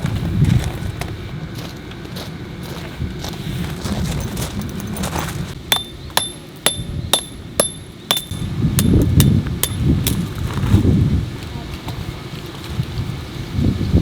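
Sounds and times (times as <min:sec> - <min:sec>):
wind rumble on microphone: 0:00.0 - 0:01.8, 0:02.6 - 0:05.6, 0:08.3 - 0:14.0
hammer striking metal tent peg: 0:05.7 - 0:10.2.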